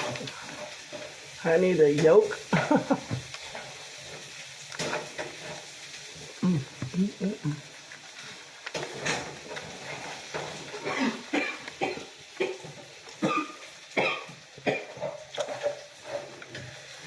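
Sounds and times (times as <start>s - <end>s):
wet chewing and smacking: 3.2s - 7.0s, 15.0s - 16.8s.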